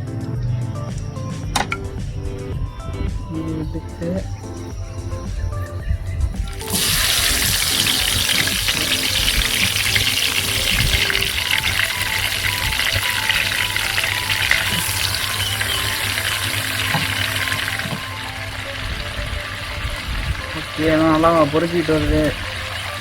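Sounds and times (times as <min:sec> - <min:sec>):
chicken sizzling in hot oil: 0:06.4 - 0:23.0.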